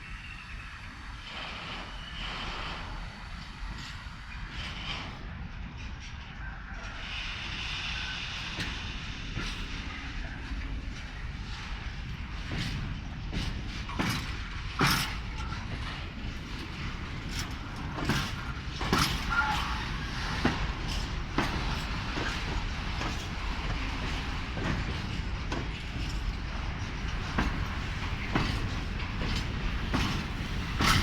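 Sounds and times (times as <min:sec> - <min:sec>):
diesel locomotive rumble: 0:00.0 - 0:31.0
wagon wheels clanking on rail joints: 0:10.4 - 0:31.0.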